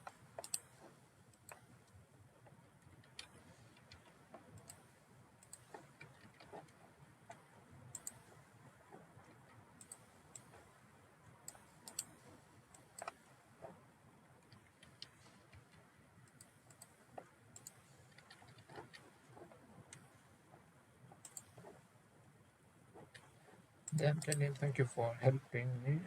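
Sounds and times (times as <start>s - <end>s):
computer mouse clicking: 0.0s - 10.8s, 11.4s - 13.8s, 14.4s - 21.9s, 23.0s - 24.8s
low hiss: 23.8s - 26.0s.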